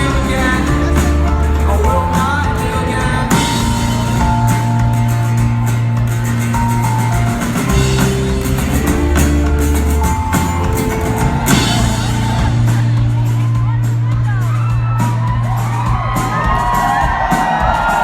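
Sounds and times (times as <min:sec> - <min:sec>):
electric guitar: 0:00.0 - 0:13.8
drum kit: 0:00.0 - 0:18.0
live rock band playing: 0:00.0 - 0:18.0.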